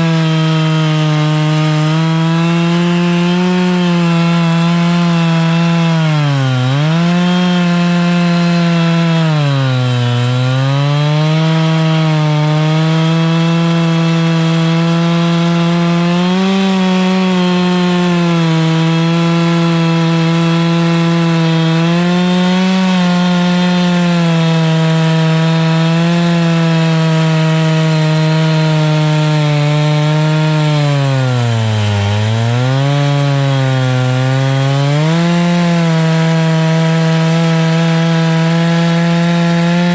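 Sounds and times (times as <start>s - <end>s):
chainsaw ripping a log: 0.0s - 39.9s.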